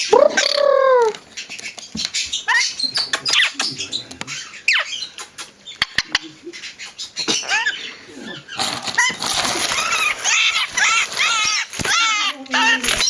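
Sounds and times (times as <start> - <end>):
lorikeet calling: 0.0 - 13.0
chattering squeaks: 7.2 - 13.0.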